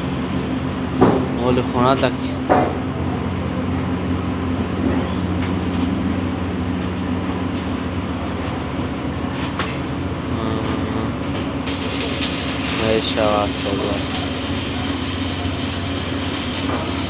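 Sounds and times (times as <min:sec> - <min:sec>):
machine humming with rushing noise: 0:00.0 - 0:17.0.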